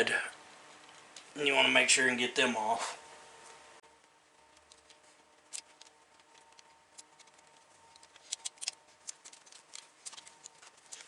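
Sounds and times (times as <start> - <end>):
metal clicks and scrapes: 4.5 - 11.0.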